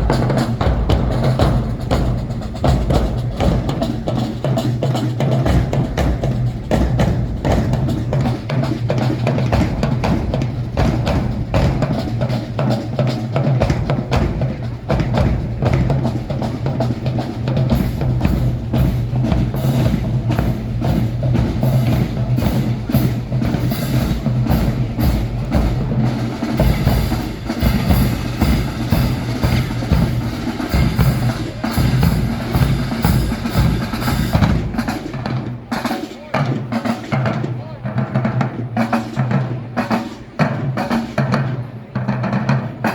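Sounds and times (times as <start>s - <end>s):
marching band playing: 0.0s - 42.9s
snare and bass drums beating: 0.0s - 42.9s.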